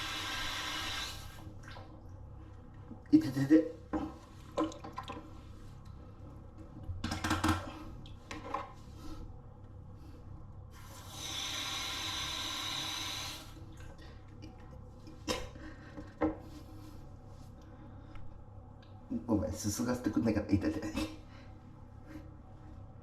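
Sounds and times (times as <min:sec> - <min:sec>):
water running from tap: 0:00.0 - 0:01.5, 0:10.9 - 0:13.4
knocks and movement noises: 0:06.6 - 0:08.8.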